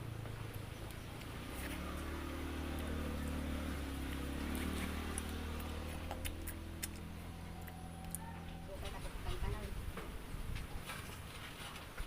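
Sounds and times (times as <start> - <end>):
vehicle engine running: 0.0 - 9.2.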